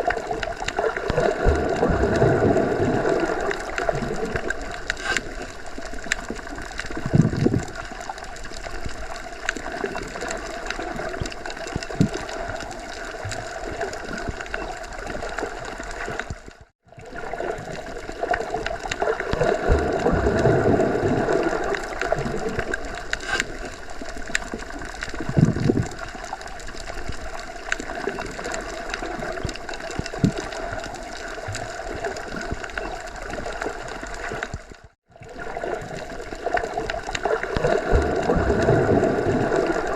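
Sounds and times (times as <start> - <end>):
low underwater surge or thud: 1.1 - 3.4, 19.4 - 21.7, 37.6 - 39.9.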